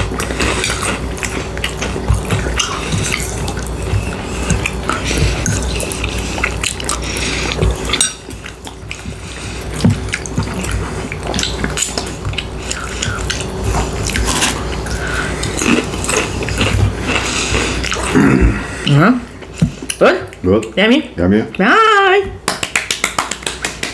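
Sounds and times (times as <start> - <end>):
wet chewing and lip smacking: 0.0 - 18.2.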